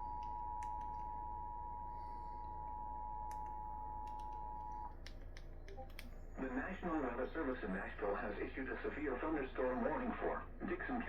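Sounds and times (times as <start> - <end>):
low hum: 0.0 - 11.0
faint clicks: 2.6 - 6.2.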